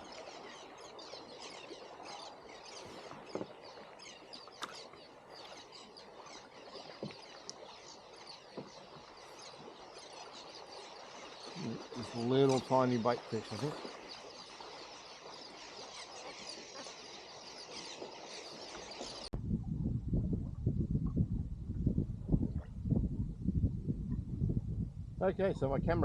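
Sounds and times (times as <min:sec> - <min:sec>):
faint wash of water: 0:00.0 - 0:19.3
seabirds chirping: 0:00.0 - 0:19.3.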